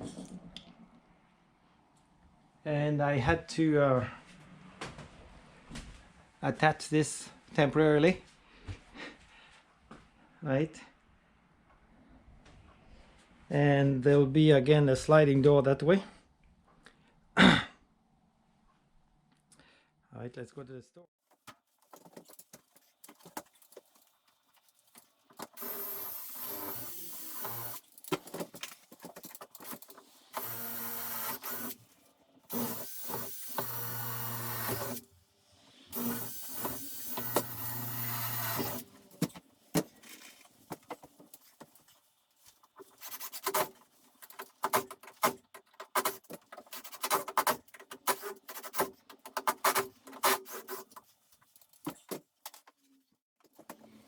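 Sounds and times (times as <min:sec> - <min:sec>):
power tool motor whining: 0:25.5 - 0:27.8, 0:30.3 - 0:31.8, 0:32.5 - 0:35.0, 0:35.9 - 0:38.9.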